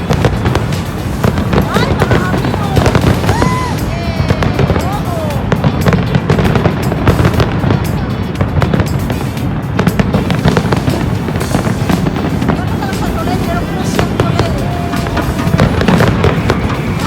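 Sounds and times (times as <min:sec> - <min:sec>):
crowd voices: 0:00.0 - 0:17.0
fireworks bangs and crackles: 0:00.0 - 0:17.0
music playing: 0:00.0 - 0:17.0.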